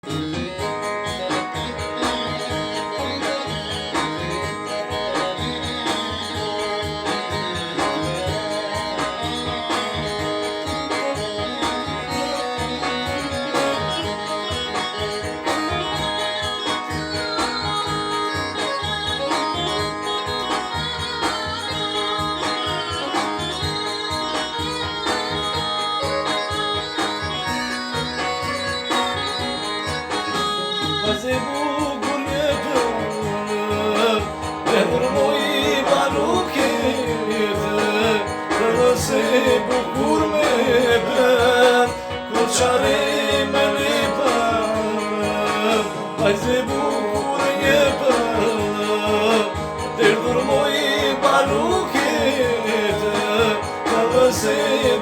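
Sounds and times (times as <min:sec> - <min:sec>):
plucked string music: 0:00.0 - 0:55.0
person singing: 0:30.6 - 0:55.0.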